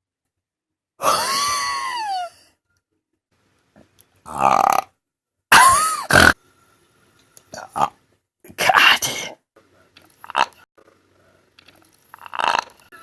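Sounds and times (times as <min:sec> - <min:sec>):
person burping: 0:04.3 - 0:04.9, 0:05.5 - 0:06.4, 0:07.6 - 0:08.0, 0:12.2 - 0:13.0.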